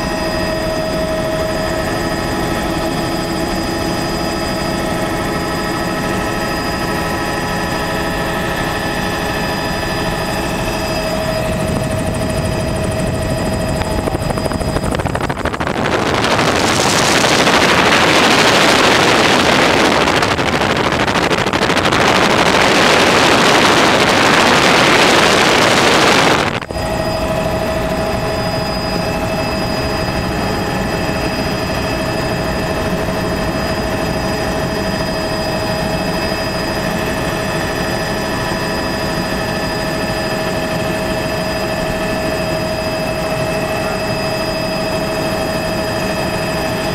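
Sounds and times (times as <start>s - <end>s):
helicopter engine whine: 0.0s - 46.9s
low rotor rumble: 0.0s - 46.9s
rushing noise: 10.2s - 30.2s.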